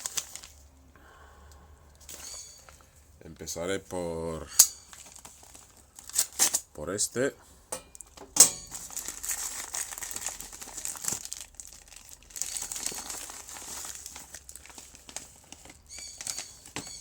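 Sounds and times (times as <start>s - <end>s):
packaging crinkling and tearing: 0.0s - 0.7s, 4.8s - 6.6s, 8.1s - 17.0s.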